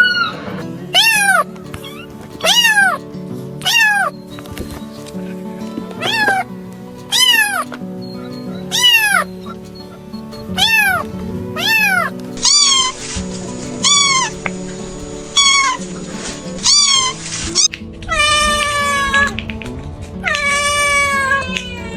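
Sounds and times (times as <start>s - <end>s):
cat meowing: 0.0s - 3.0s, 3.6s - 4.1s, 5.6s - 6.4s, 7.1s - 9.3s, 10.4s - 19.5s, 20.2s - 21.9s
soft background music: 0.0s - 21.9s.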